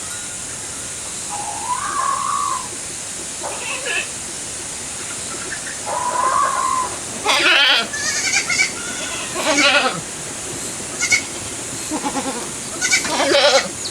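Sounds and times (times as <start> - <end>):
steady background hiss: 0.0 - 13.9
goats bleating: 6.4 - 13.9.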